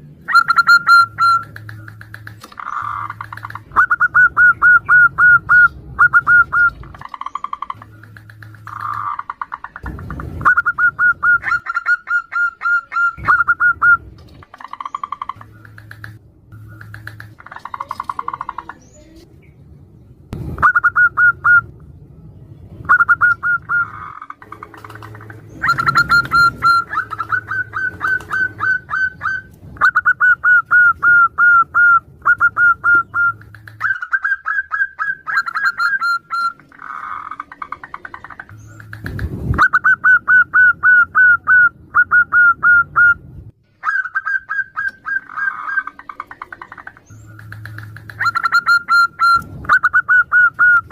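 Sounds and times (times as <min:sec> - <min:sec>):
doves calling in clipped notes: 0:00.0 - 0:19.6, 0:22.7 - 0:50.9
low thumps: 0:09.7 - 0:11.6.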